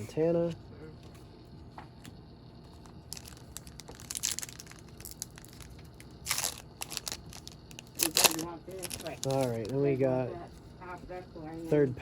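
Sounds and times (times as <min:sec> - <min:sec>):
foil wrapper crinkling: 0:02.8 - 0:10.0.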